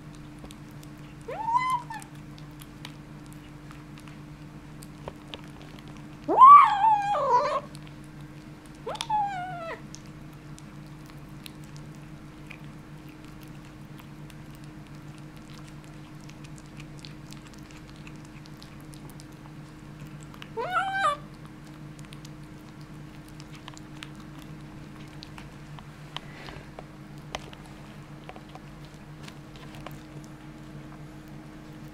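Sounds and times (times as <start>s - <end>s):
kitten yowling: 1.2s - 2.2s, 6.3s - 7.7s, 8.8s - 9.8s, 20.5s - 21.2s.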